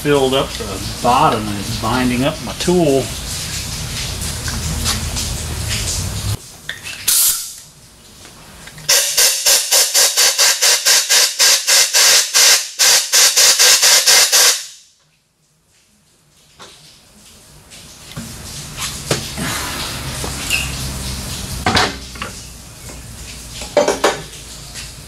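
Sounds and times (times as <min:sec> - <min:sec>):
short sharp air hiss: 0:07.1 - 0:07.5, 0:08.9 - 0:14.8
compressed air hissing in pulses: 0:19.0 - 0:21.6.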